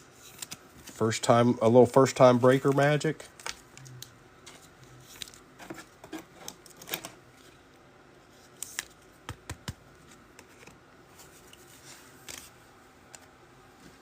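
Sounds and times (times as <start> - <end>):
trading cards being handled: 2.0 - 7.6.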